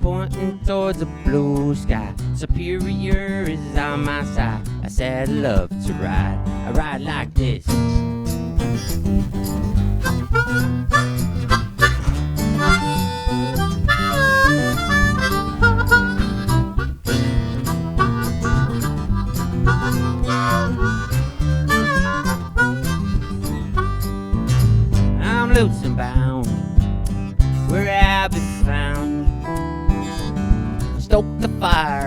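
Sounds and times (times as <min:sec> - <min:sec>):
strummed acoustic guitar: 0:00.0 - 0:32.0
harmonica solo with bending notes: 0:08.7 - 0:24.8.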